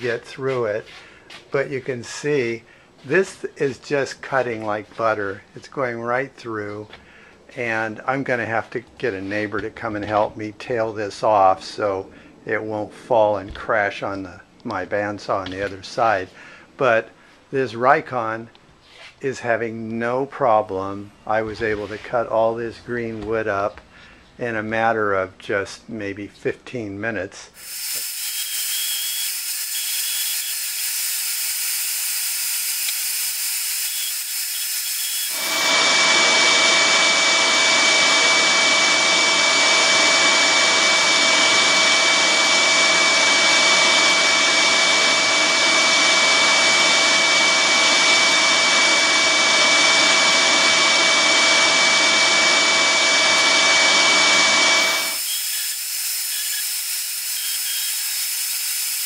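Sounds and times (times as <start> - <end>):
band saw cutting wood with whine: 0.0 - 0.8, 27.6 - 59.0
band saw hiss: 27.6 - 35.8, 54.8 - 59.0.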